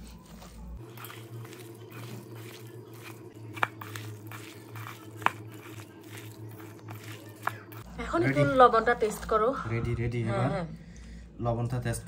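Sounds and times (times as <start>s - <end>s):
person chewing and crunching: 0.8s - 7.9s.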